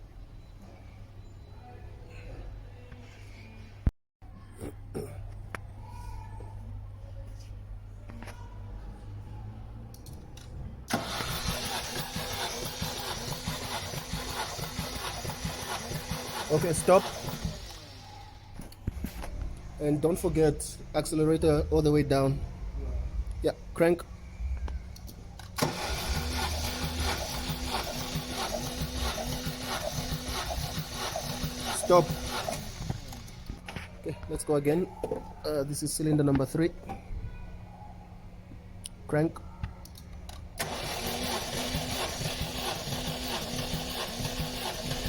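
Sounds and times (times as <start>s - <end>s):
engine cranking on starter motor: 10.9s - 18.3s, 25.4s - 33.6s, 40.3s - 45.0s.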